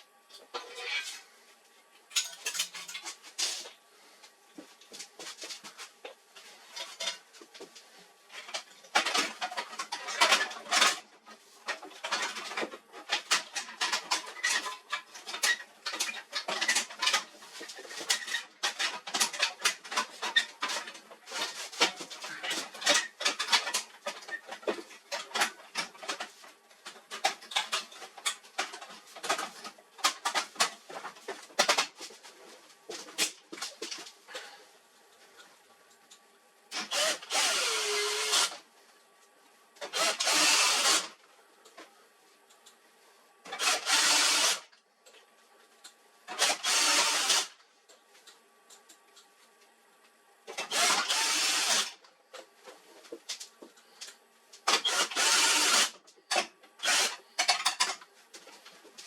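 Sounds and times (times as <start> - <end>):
plastic and metal parts rattling: 8.4 - 32.1.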